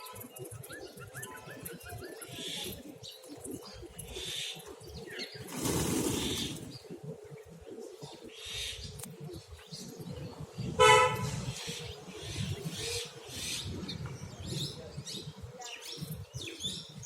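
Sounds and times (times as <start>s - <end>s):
vehicle horn toot: 10.8s - 11.3s.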